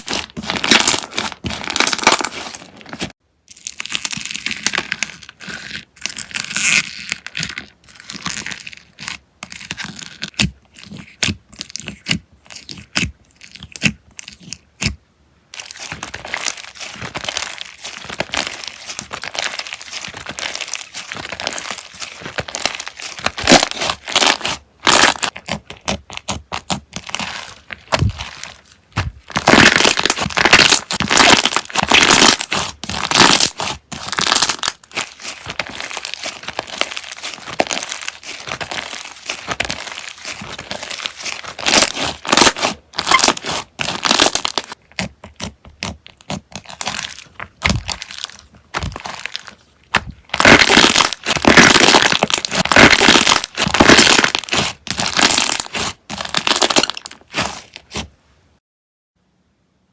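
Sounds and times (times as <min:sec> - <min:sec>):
sticky slime pops and crackles: 0:22.4 - 0:58.0.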